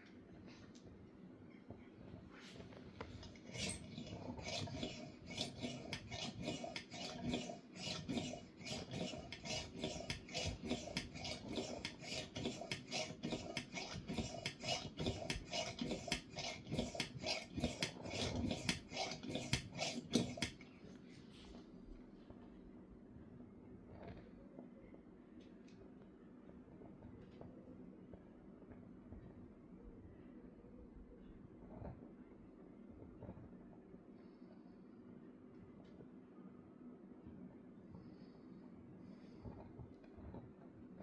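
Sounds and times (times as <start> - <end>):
lamp hand pump rasping strokes: 3.1 - 20.6.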